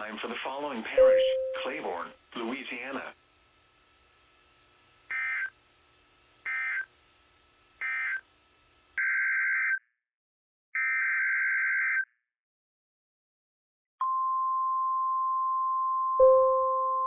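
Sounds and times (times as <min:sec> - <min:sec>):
warbling digital data bursts: 0:00.0 - 0:03.2.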